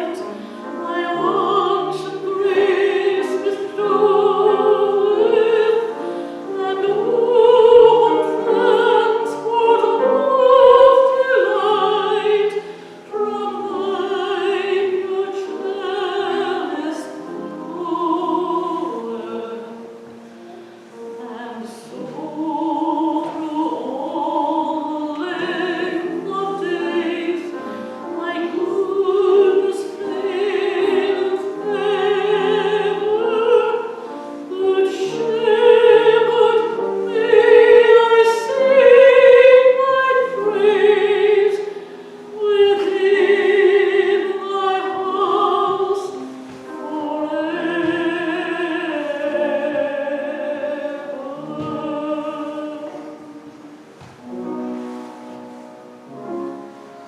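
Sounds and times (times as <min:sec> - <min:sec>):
classical singing: 0:00.0 - 0:57.0.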